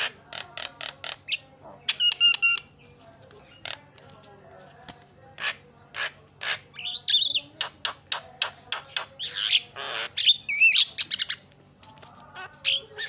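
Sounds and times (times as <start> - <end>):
myna chattering: 0.0 - 13.0.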